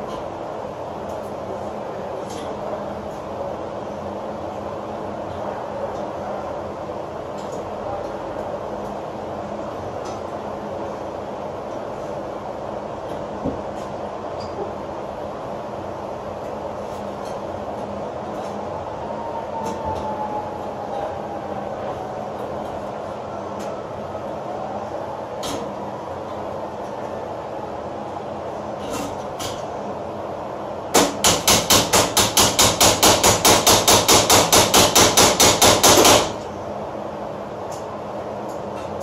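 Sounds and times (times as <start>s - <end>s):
rapid hammering: 30.9s - 36.4s.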